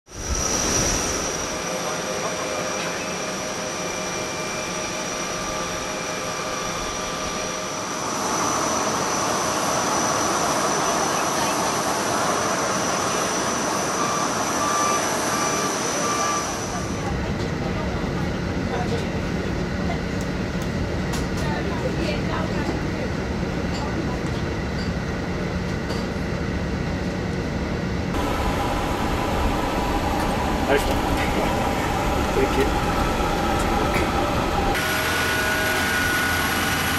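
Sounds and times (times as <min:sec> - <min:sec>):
airliner cabin rushing and hum: 0:00.1 - 0:36.9
faint constant whines: 0:00.2 - 0:34.8
rush of cockpit ventilation: 0:28.2 - 0:36.9.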